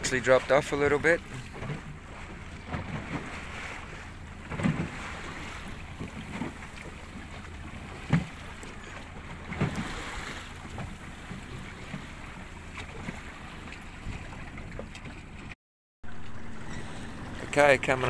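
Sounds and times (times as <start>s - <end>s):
water sloshing against hull: 0.0s - 18.0s
steady low drone: 16.0s - 18.0s.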